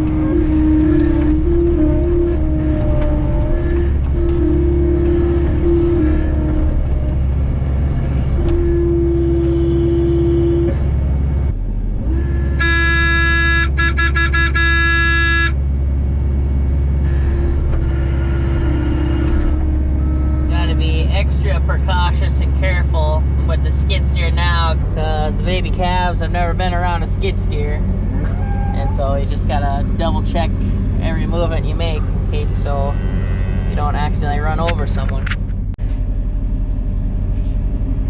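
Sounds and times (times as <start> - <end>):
high horn-like tone: 0.0 - 7.3, 8.2 - 10.8, 12.1 - 15.6, 17.0 - 23.0
hydraulic whine: 0.0 - 15.6, 16.9 - 23.5
skid steer engine running: 0.0 - 38.0.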